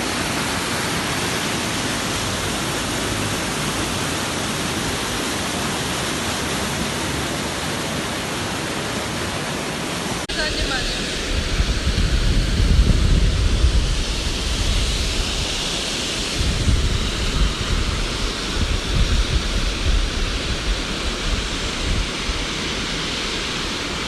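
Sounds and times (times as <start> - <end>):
waterfall rushing: 0.0 - 24.0
wind buffeting microphone: 10.3 - 24.0.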